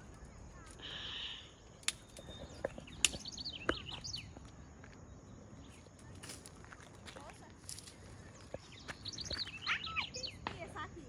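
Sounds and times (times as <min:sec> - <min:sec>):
small birds chirping: 0:00.0 - 0:10.9
sharp snaps: 0:01.8 - 0:02.3.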